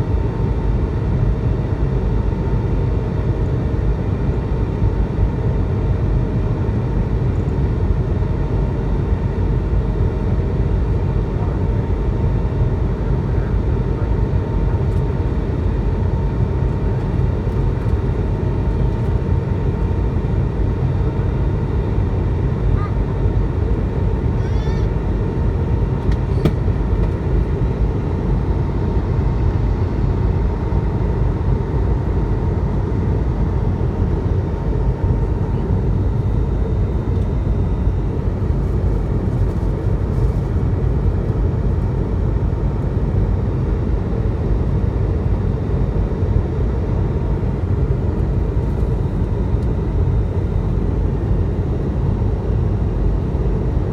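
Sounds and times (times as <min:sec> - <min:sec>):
airliner cabin noise: 0:13.4 - 0:42.3.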